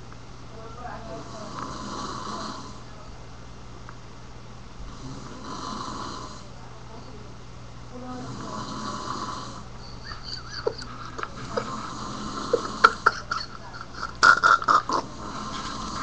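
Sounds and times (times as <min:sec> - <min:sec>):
man snoring: 0:01.1 - 0:02.9, 0:04.9 - 0:06.5, 0:08.1 - 0:09.7, 0:10.6 - 0:16.0.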